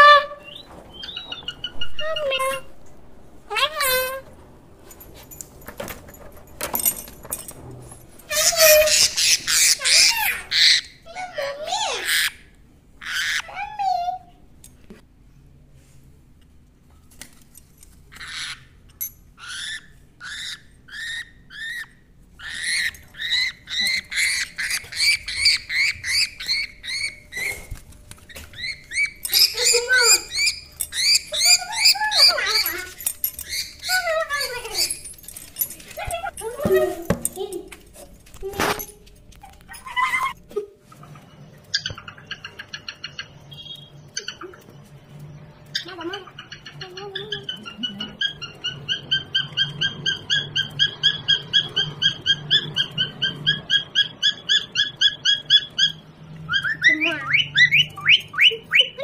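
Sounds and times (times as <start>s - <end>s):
parrot squawking: 0.0s - 2.8s, 3.5s - 4.3s, 8.3s - 14.2s, 19.4s - 27.7s, 28.3s - 35.2s, 45.7s - 59.0s.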